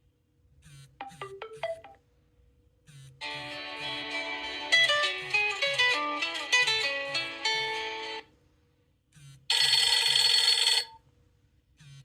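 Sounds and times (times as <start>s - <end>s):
bright dense ringtone: 1.0s - 2.0s, 3.2s - 8.2s
plucked guitar-like ringtone: 1.0s - 2.0s, 3.2s - 8.2s.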